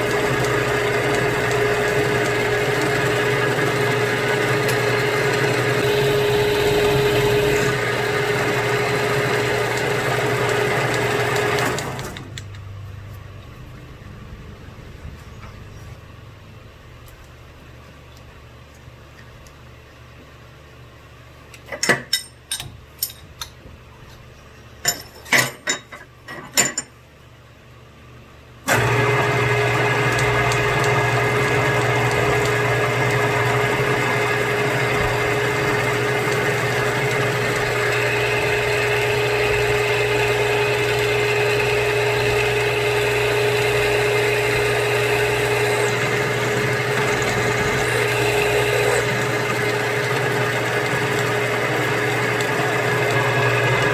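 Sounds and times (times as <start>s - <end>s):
milling machine motor humming: 0.0s - 16.3s, 28.7s - 53.9s.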